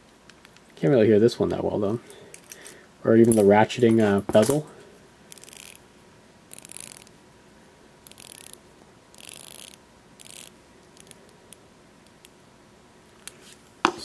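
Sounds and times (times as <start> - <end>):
wristwatch winding ratchet clicks: 5.3 - 5.8, 6.5 - 7.1, 8.0 - 11.2.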